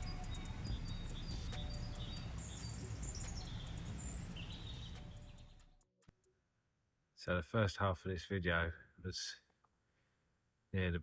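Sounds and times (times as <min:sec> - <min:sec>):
small birds chirping: 0:00.0 - 0:05.7.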